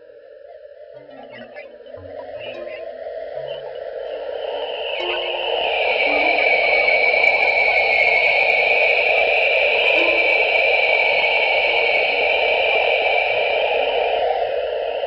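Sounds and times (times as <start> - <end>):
synthesized hiss-like drone: 0.0 - 15.0
held high tone: 1.0 - 4.3, 4.9 - 8.3.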